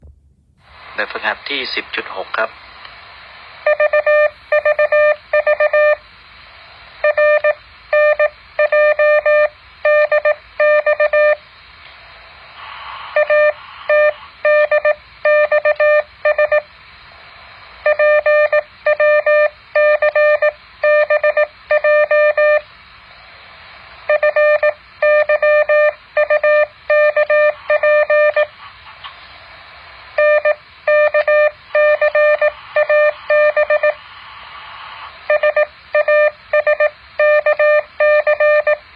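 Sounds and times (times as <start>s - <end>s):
steady hiss: 0.6s - 4.7s, 6.0s - 8.6s, 11.5s - 14.4s, 16.1s - 17.9s, 22.7s - 24.1s, 27.5s - 37.2s
morse code beeps: 3.6s - 6.0s, 7.0s - 11.4s, 13.2s - 16.7s, 17.8s - 22.6s, 24.1s - 28.5s, 30.2s - 34.0s, 35.3s - 38.8s.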